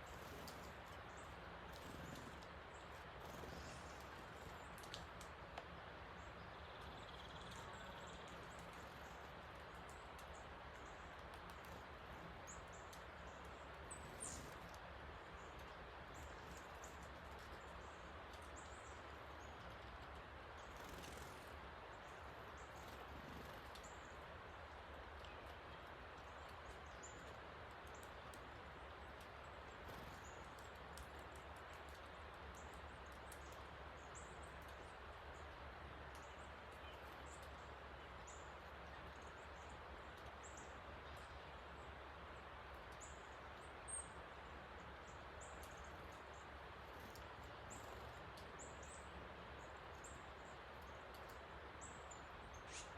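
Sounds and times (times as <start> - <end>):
bird chirps: 51.8 - 52.9.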